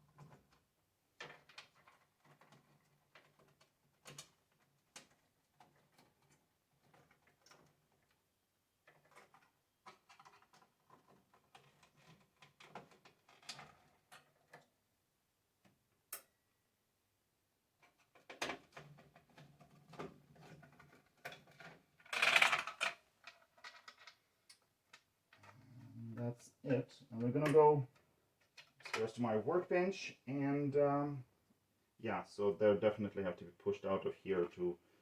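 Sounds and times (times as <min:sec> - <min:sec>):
plastic connectors clicking and rattling: 0:18.2 - 0:25.5.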